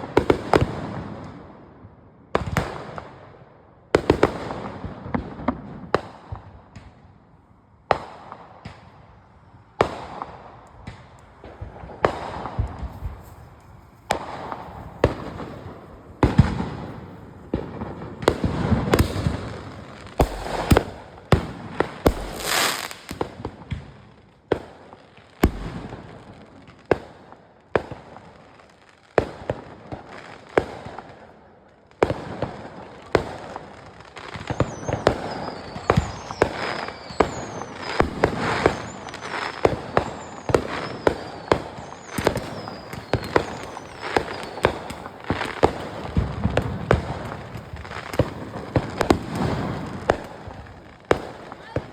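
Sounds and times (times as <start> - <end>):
fireworks bangs and pops: 2.4 - 3.2, 4.0 - 7.0, 9.8 - 31.3, 32.0 - 51.9
fireworks crackling: 9.7 - 31.3, 32.0 - 51.9.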